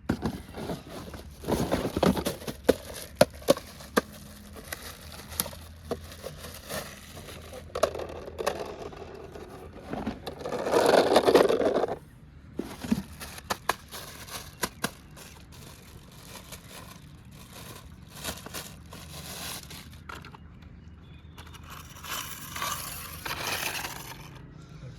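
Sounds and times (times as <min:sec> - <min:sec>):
packaging rustling: 0:00.1 - 0:12.0, 0:12.6 - 0:20.4
plastic toy scraping and clicking: 0:00.1 - 0:12.0, 0:12.6 - 0:20.5, 0:21.3 - 0:24.5.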